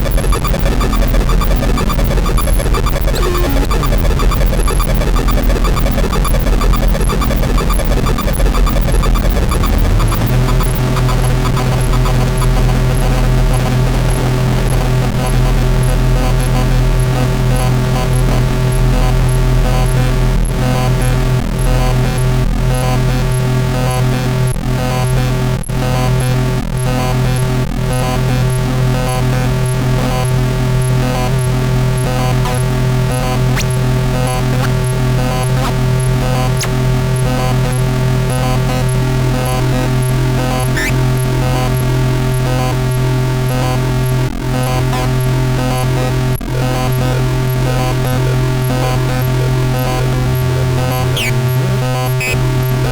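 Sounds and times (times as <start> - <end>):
short electronic bleeps: 0.0 - 14.3, 40.7 - 41.0, 51.1 - 51.4, 52.2 - 52.4
high beeps: 0.0 - 15.3, 40.8 - 41.0, 51.2 - 51.4
steady low hum: 0.0 - 22.5
crackling static: 0.0 - 52.9
low electronic drone: 0.0 - 52.9.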